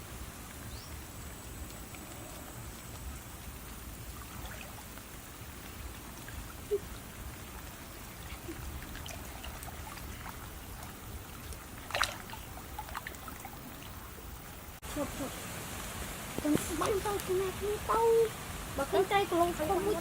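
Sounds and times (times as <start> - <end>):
small ticks: 0.0 - 8.6
water trickling and dripping: 0.0 - 20.0
water splash: 3.4 - 14.8.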